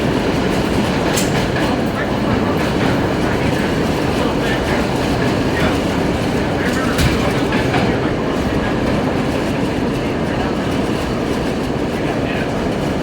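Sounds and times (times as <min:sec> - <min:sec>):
subway wheels rumbling on rail: 0:00.0 - 0:13.0.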